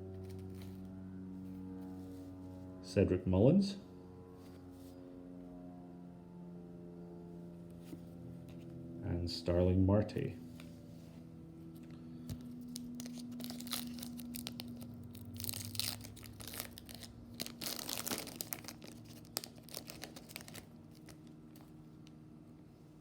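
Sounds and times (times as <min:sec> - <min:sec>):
foil wrapper tearing and crinkling: 0:12.6 - 0:21.6.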